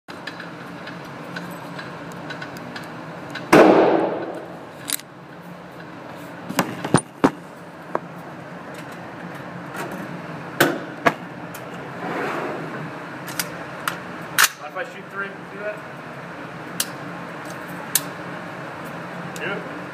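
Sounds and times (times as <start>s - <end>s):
sharp clicks and knocks: 0.1s - 5.1s
rifle shot: 3.5s - 4.5s.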